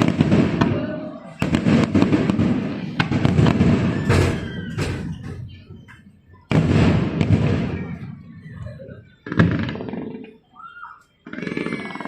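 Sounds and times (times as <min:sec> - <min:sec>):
fireworks booming: 0:00.0 - 0:12.0.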